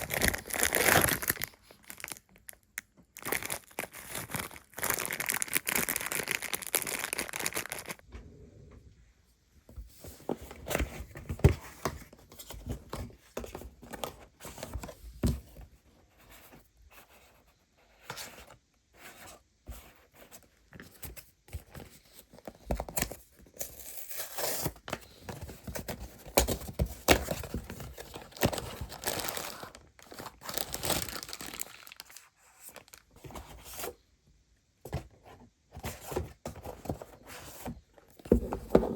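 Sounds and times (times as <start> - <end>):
packaging being torn and crinkled: 0.0 - 2.6, 3.2 - 8.0, 28.3 - 33.0.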